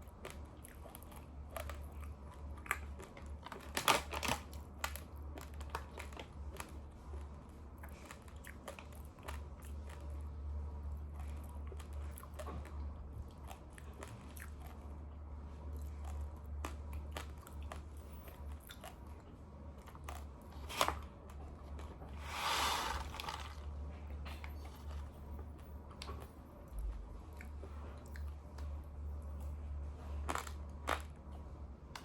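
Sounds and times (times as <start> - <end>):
raw rice being chewed: 0.0 - 31.3.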